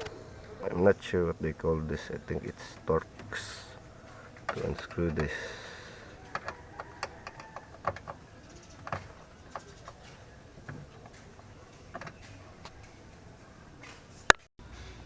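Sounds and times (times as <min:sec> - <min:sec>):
screwdriver clicking on metal: 0:01.9 - 0:13.0.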